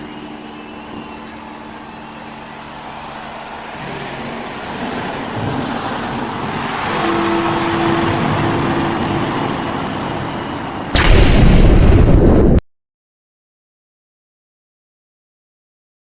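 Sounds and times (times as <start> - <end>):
rushing engine noise: 0.0 - 12.6
loud explosion: 11.0 - 12.6.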